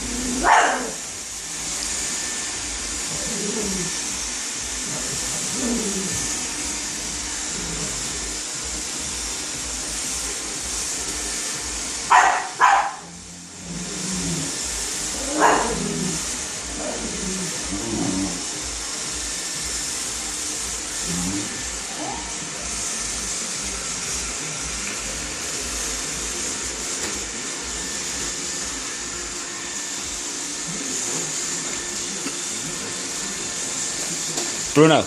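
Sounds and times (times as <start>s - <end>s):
robot vacuum cleaner whirring: 0.0s - 35.0s
dog barking: 0.4s - 1.0s, 12.1s - 13.1s, 15.3s - 15.8s.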